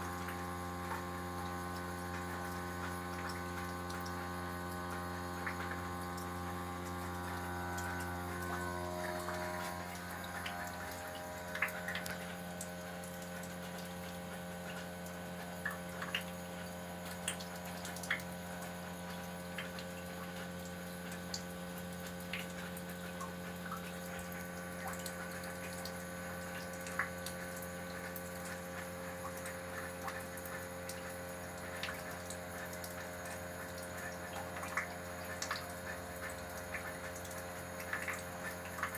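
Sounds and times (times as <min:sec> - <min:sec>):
air conditioner humming: 0:00.0 - 0:14.2
water dripping and ticking: 0:00.0 - 0:38.9.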